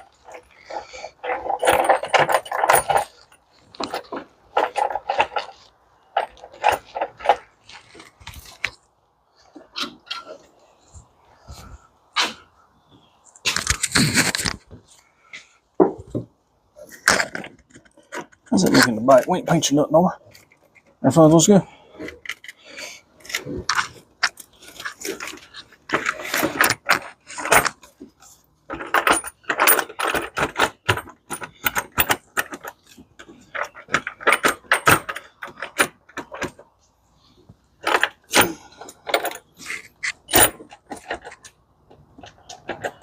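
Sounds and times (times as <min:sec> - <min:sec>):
metallic clinks and rattles of tools: 0:00.0 - 0:08.8, 0:22.0 - 0:36.7, 0:37.8 - 0:43.0.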